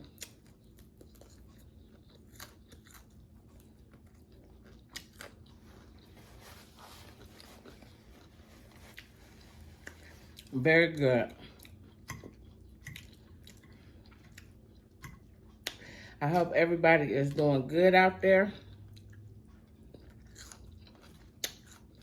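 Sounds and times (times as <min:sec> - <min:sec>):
chewing crispy chicken: 0:00.0 - 0:16.1, 0:18.5 - 0:22.0
faint crunches: 0:04.6 - 0:10.5.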